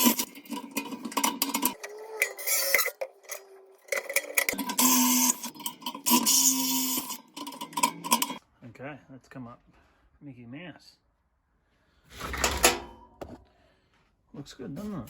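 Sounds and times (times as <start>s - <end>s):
metal clicks and clinks: 0.0s - 8.4s
power drill running: 4.1s - 7.5s.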